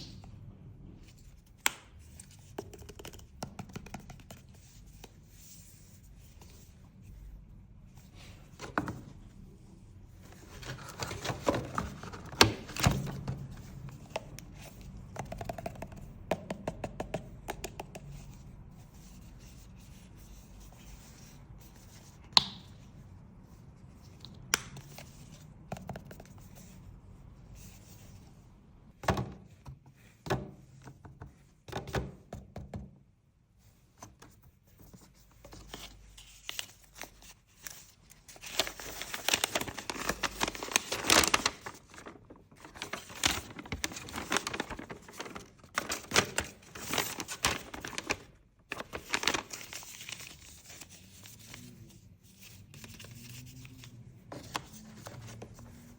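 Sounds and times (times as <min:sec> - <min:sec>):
packaging taps and clicks: 0:15.1 - 0:18.2
wrapping crinkling and tearing: 0:36.4 - 0:51.6.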